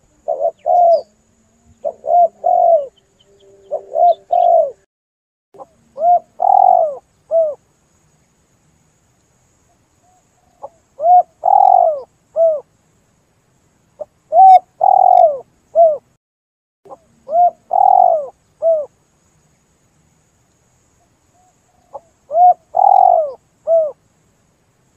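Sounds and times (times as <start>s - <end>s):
dove cooing: 0.0s - 4.8s, 5.6s - 7.6s, 10.6s - 12.6s, 14.3s - 16.1s, 16.9s - 18.9s, 21.8s - 24.0s.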